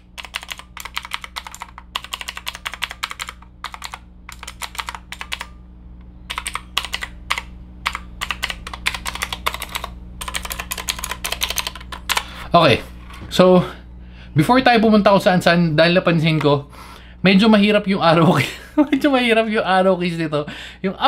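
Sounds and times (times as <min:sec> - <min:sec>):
clicky keyboard typing: 0:00.0 - 0:05.5, 0:06.3 - 0:12.3.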